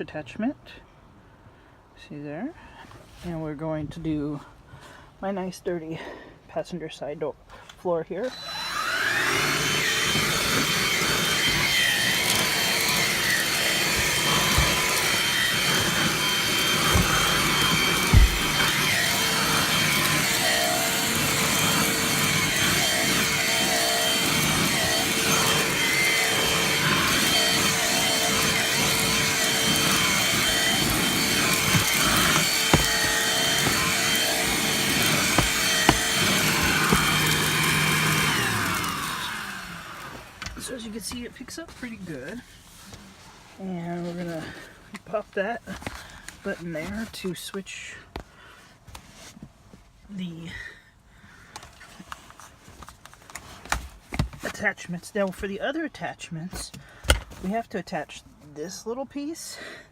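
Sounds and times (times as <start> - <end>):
car vacuum whining: 8.3 - 42.0.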